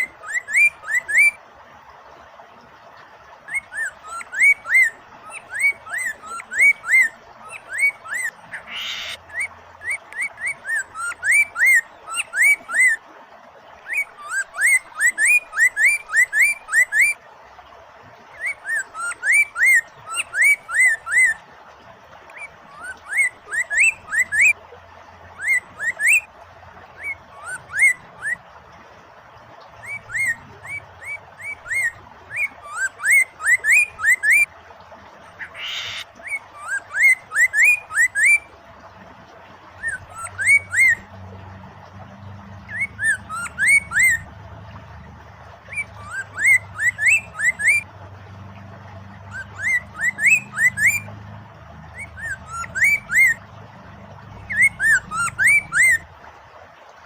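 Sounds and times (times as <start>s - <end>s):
bird singing whistled notes: 0.0s - 1.4s, 3.5s - 13.0s, 13.8s - 17.2s, 18.4s - 21.4s, 22.3s - 24.6s, 25.4s - 26.3s, 27.0s - 28.4s, 29.8s - 34.5s, 35.5s - 38.5s, 39.8s - 41.0s, 42.7s - 44.3s, 45.7s - 47.9s, 49.3s - 51.1s, 52.0s - 53.4s, 54.4s - 56.0s
running water: 0.0s - 57.0s.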